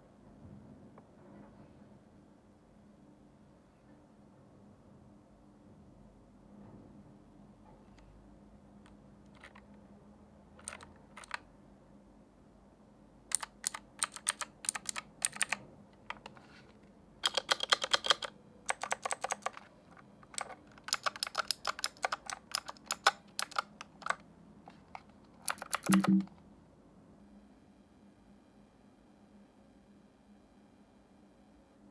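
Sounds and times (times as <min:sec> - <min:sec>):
clicky mechanical keyboard typing: 0:09.3 - 0:09.7, 0:10.6 - 0:11.4, 0:13.3 - 0:16.4, 0:17.2 - 0:26.3.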